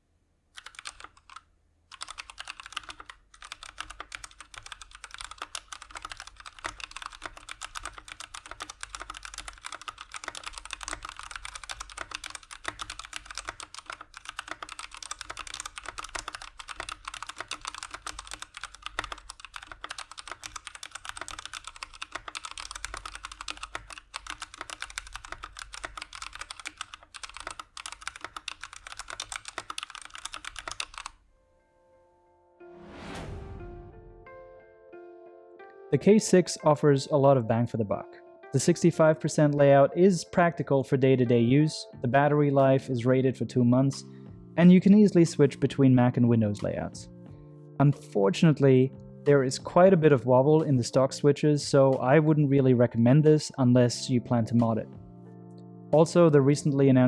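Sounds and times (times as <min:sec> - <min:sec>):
fast mechanical keyboard typing: 0:00.6 - 0:31.2.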